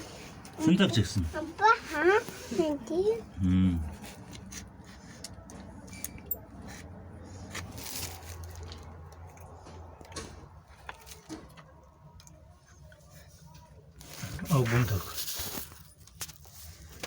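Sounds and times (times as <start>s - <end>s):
light clicks and knocks of parts: 4.2s - 13.1s.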